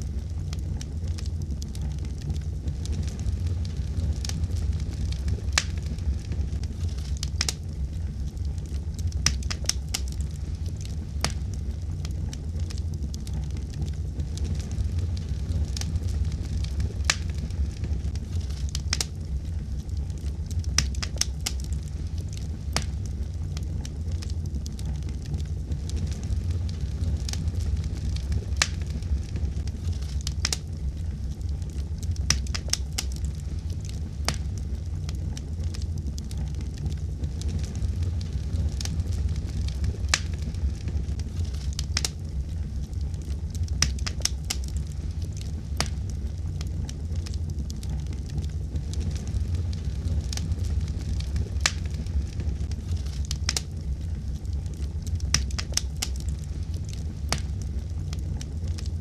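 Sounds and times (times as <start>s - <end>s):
fire crackling in a fireplace: 0.0s - 59.0s
low rumble: 0.0s - 59.0s.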